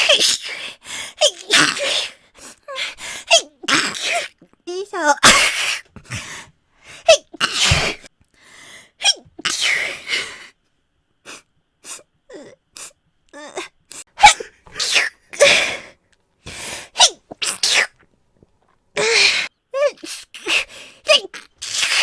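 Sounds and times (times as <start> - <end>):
woman sneezing: 5.1 - 5.9, 7.1 - 8.1, 14.1 - 15.8
quiet breaths: 8.2 - 9.0.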